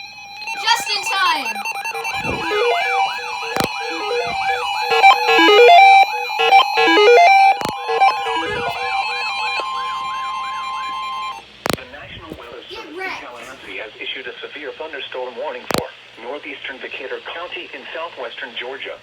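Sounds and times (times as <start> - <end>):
siren yelping: 0.0 - 11.4
steady beeping tones: 0.0 - 11.4
stepped beeps: 0.0 - 11.4
steady alert tone: 0.5 - 9.1.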